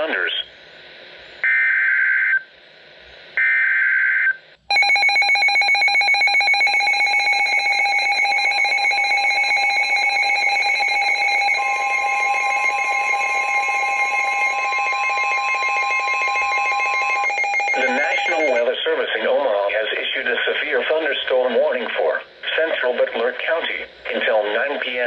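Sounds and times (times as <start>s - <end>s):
pulsing ringing attention tone: 4.7s - 18.6s
screeching data burst tones: 4.7s - 18.7s.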